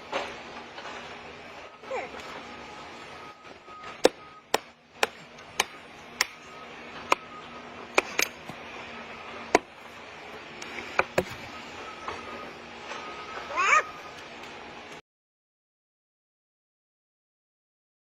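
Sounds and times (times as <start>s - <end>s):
axe chopping wood: 4.0s - 6.4s, 7.9s - 8.6s, 9.5s - 9.8s, 11.0s - 11.5s.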